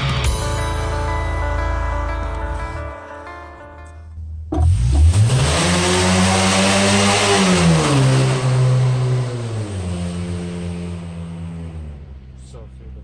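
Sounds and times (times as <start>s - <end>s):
car accelerating with loud exhaust: 4.5s - 13.0s.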